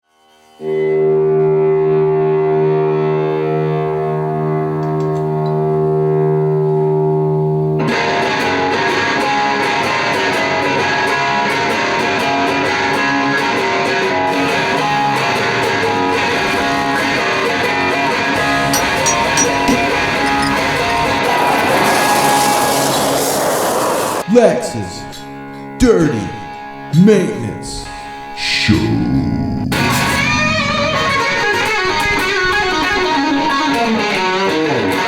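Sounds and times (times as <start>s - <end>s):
rock music with electric guitar: 29.9s - 35.0s.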